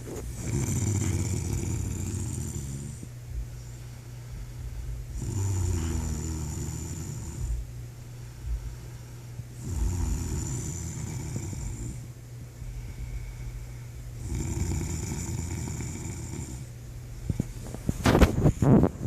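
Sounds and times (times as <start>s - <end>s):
steady low hum: 0.0s - 19.0s
man snoring: 0.4s - 3.1s, 5.2s - 7.6s, 9.6s - 12.1s, 14.2s - 16.7s.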